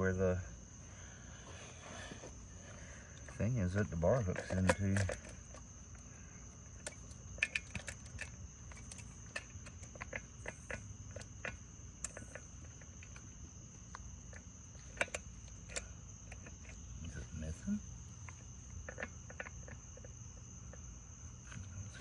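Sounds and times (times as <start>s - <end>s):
chainsaw parts clicking: 3.2s - 5.7s, 6.8s - 12.4s.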